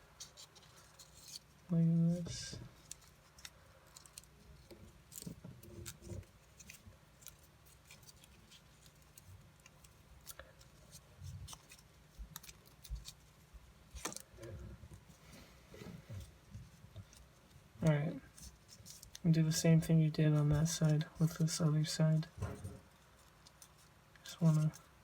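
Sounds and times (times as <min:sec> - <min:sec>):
paper crinkling: 0:00.2 - 0:01.6, 0:02.7 - 0:15.2, 0:16.0 - 0:19.3, 0:20.3 - 0:25.0.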